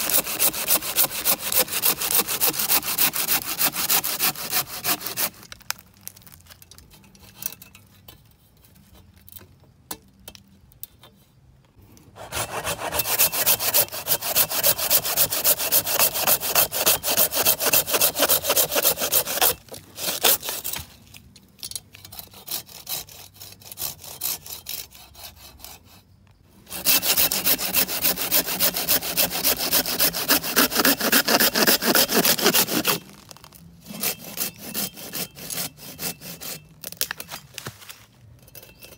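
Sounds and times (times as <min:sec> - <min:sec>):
hand saw cutting wood: 0:00.0 - 0:05.5, 0:12.2 - 0:20.9, 0:22.1 - 0:33.2, 0:33.8 - 0:36.7.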